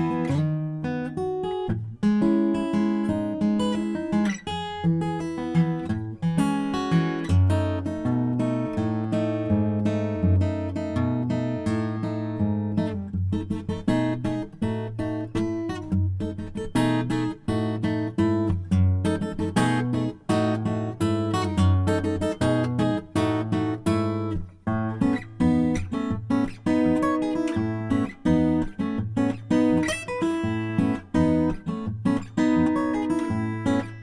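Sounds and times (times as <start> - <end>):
acoustic guitar playing: 0.0 - 34.0.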